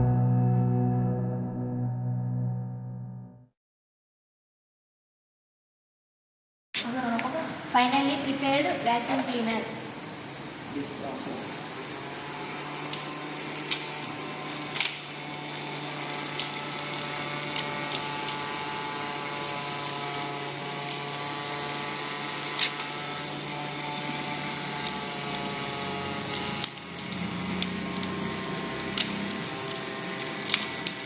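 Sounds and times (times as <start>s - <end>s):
small motor and fan whining: 9.1s - 31.0s.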